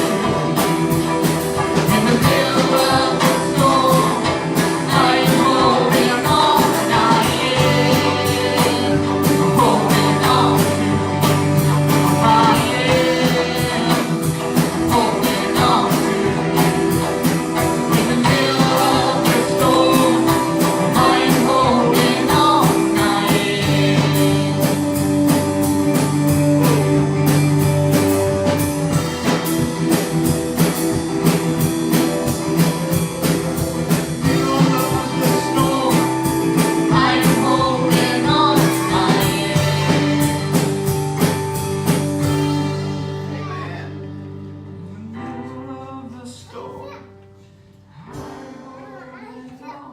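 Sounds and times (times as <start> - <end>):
steady drum beat: 0.0 - 44.3
guitar: 0.0 - 49.9
person singing worship song: 1.8 - 17.0, 17.6 - 24.9, 34.2 - 40.8.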